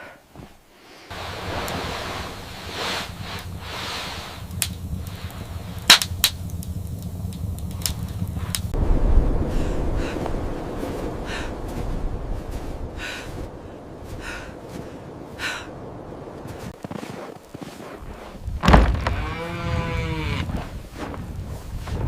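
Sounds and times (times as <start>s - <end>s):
sharp thunk: 18.6s - 19.2s
cow mooing: 19.1s - 20.5s.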